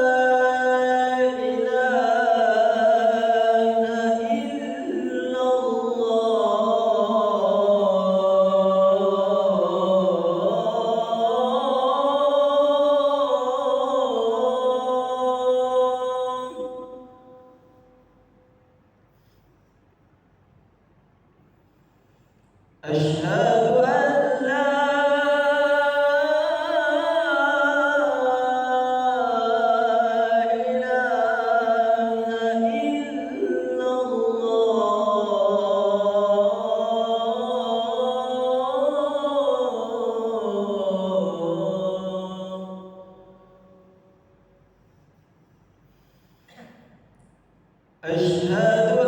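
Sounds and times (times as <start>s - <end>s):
man chanting call to prayer: 0.0s - 17.6s, 22.8s - 43.4s, 48.0s - 49.0s.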